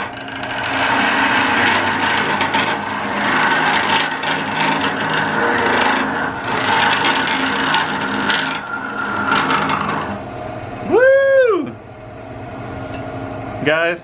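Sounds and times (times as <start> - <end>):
turning tool scraping wood: 0.0 - 10.2
wood lathe humming: 0.0 - 10.2.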